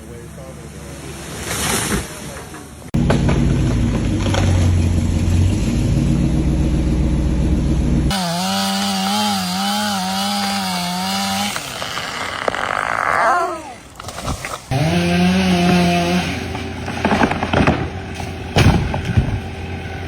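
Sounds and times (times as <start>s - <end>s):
chainsaw running: 3.2s - 13.1s, 14.7s - 20.0s.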